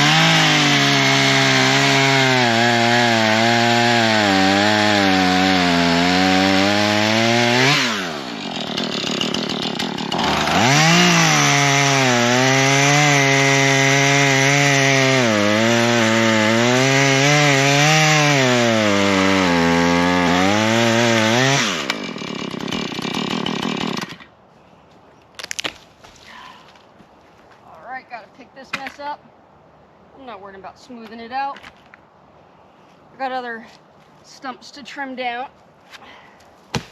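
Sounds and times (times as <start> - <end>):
chainsaw cutting wood: 0.0 - 24.3.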